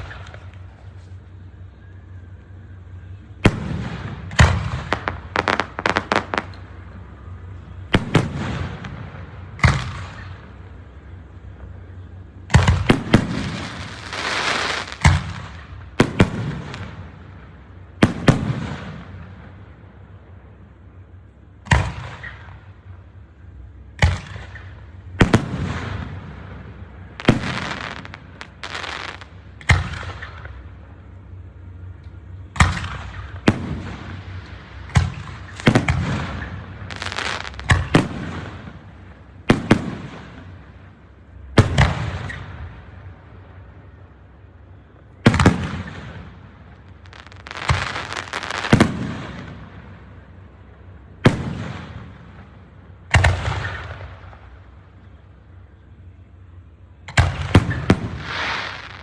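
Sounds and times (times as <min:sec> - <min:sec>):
fireworks crackling: 0:02.9 - 0:11.2, 0:12.5 - 0:17.4, 0:24.2 - 0:30.7, 0:32.6 - 0:42.5, 0:45.3 - 0:50.4, 0:57.2 - 0:59.0
fireworks bangs: 0:03.4 - 0:11.0, 0:12.5 - 0:17.4, 0:24.0 - 0:30.7, 0:32.2 - 0:43.1, 0:45.2 - 0:50.4, 0:51.2 - 0:54.6, 0:57.1 - 0:59.0.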